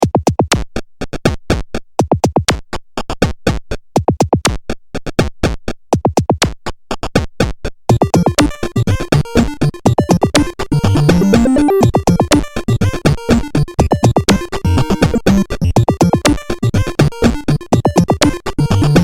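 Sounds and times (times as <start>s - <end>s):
drum machine hits sweeping down: 7.9s - 12.5s.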